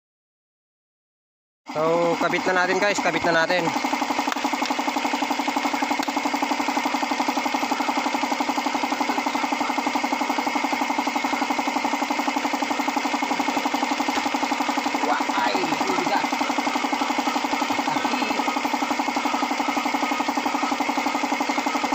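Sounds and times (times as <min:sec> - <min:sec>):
engine idling with pulsing beat: 0:01.7 - 0:21.9.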